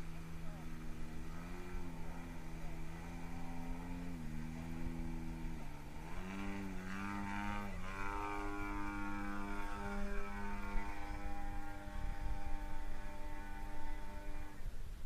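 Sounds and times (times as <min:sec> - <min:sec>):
model airplane propeller and motor: 0:00.0 - 0:15.0.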